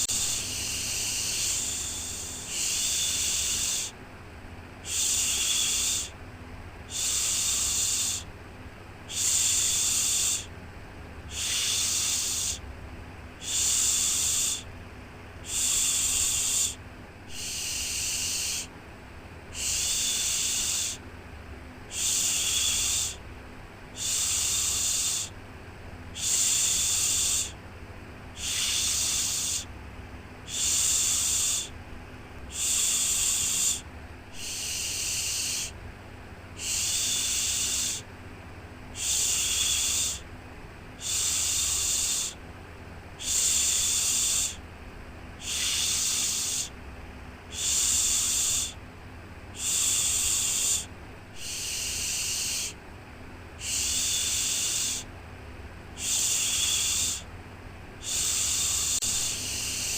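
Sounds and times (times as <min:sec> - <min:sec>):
person shushing: 0:00.0 - 0:04.0, 0:15.4 - 0:18.7, 0:19.6 - 0:21.0, 0:26.2 - 0:27.6, 0:28.4 - 0:29.7, 0:30.5 - 0:31.7, 0:32.5 - 0:35.8, 0:36.6 - 0:38.1, 0:39.0 - 0:40.3, 0:45.4 - 0:46.8, 0:47.5 - 0:48.8, 0:49.6 - 0:52.8, 0:53.6 - 0:55.1, 0:56.0 - 0:57.3, 0:58.0 - 0:59.9
faint low hum: 0:00.0 - 0:59.9.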